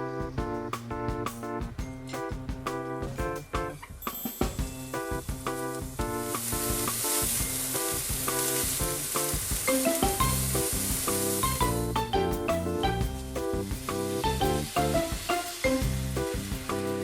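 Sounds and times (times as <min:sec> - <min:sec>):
background music: 0:00.0 - 0:17.0
food sizzling in a frying pan: 0:05.8 - 0:11.9, 0:13.2 - 0:17.0.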